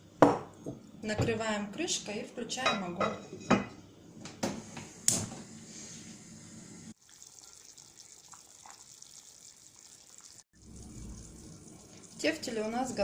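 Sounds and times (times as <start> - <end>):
meatballs stewing in a pan: 6.9 - 13.0.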